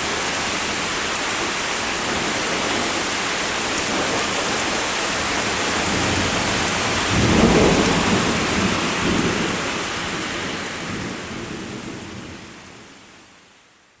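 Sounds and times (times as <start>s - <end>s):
rain hissing: 0.0s - 13.3s
low rumble of thunder: 5.7s - 12.5s.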